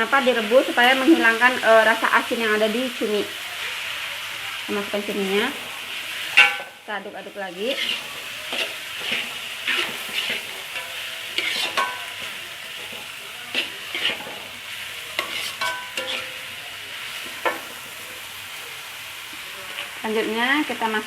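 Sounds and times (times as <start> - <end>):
food sizzling in a pan: 0.0 - 21.0
utensil scraping a pan: 7.6 - 16.5.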